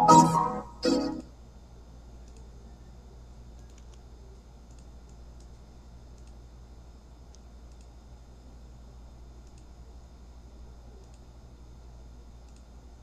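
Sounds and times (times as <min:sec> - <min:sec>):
low electrical hum: 0:00.0 - 0:13.0
computer mouse clicks: 0:02.2 - 0:02.5, 0:03.6 - 0:04.0, 0:04.7 - 0:06.4, 0:07.3 - 0:08.0, 0:09.4 - 0:09.8, 0:11.0 - 0:11.3, 0:12.4 - 0:12.7.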